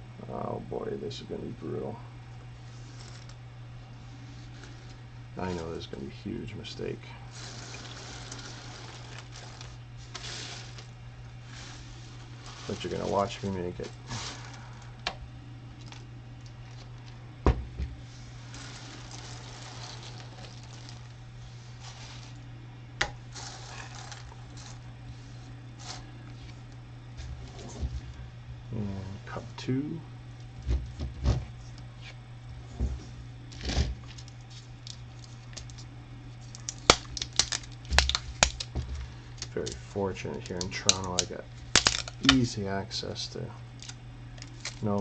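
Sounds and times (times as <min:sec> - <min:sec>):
steady low hum: 0:00.0 - 0:45.0
plastic pieces rustling: 0:07.3 - 0:14.9, 0:18.4 - 0:21.1, 0:23.3 - 0:24.8, 0:36.4 - 0:42.5, 0:43.8 - 0:45.0
plastic pieces knocking: 0:40.6 - 0:42.4.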